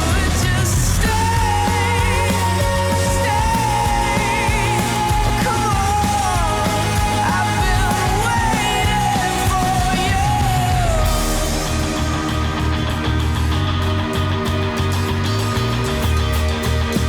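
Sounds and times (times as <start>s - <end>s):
high wavering vocal: 0.0s - 14.1s
rock band playing: 0.0s - 17.0s.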